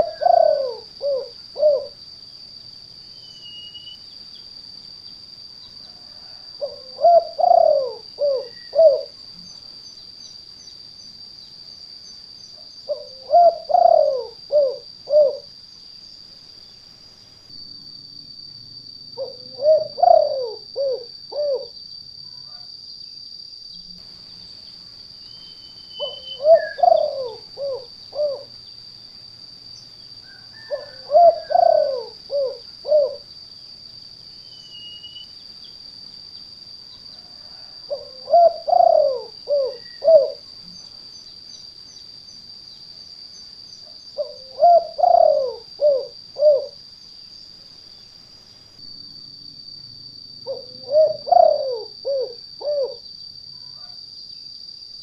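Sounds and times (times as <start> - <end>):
dove cooing: 0.0 - 2.0, 6.0 - 9.2, 12.8 - 15.5, 19.2 - 21.8, 26.0 - 28.6, 30.3 - 33.3, 37.2 - 40.4, 44.2 - 46.8, 50.4 - 53.0
steady high-pitched whine: 0.0 - 55.0.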